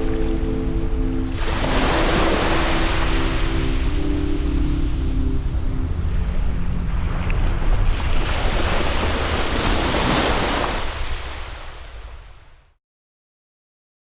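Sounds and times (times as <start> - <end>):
wind buffeting microphone: 0.0 - 12.2
sea waves breaking on beach: 0.0 - 12.6.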